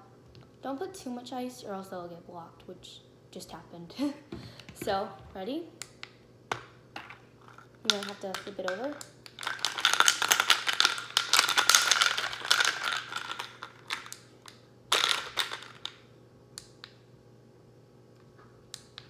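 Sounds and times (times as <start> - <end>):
ice rattling in blender jar: 7.0 - 14.1, 14.9 - 15.9.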